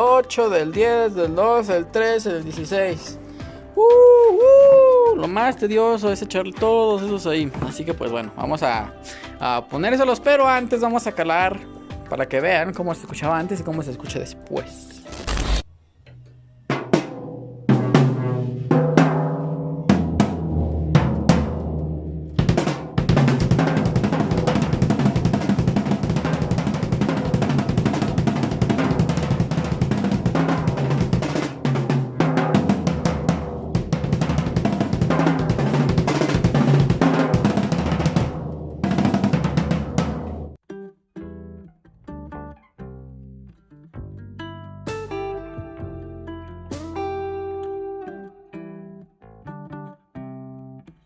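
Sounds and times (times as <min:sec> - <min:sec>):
drum kit beat with cymbals: 0:00.0 - 0:15.0, 0:16.7 - 0:40.6, 0:44.9 - 0:46.0, 0:46.7 - 0:47.3.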